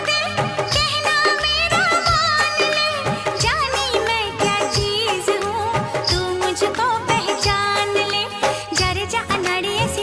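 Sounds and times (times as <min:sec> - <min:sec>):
film-style song over a beat: 0:00.0 - 0:10.0.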